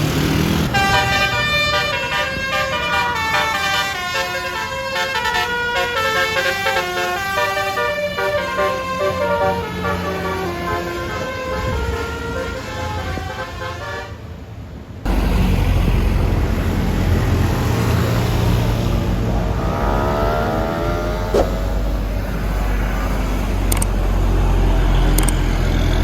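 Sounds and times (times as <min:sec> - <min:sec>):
bus engine rumble: 0:00.0 - 0:26.0
bus horn playing melody: 0:00.6 - 0:14.4.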